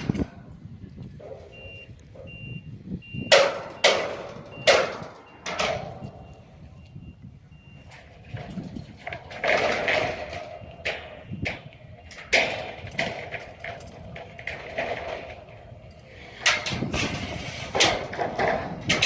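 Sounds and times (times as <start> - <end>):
vehicle reversing alarm beeping: 0.0 - 16.4
loud ringing metal clanks: 3.2 - 7.0, 7.8 - 19.0.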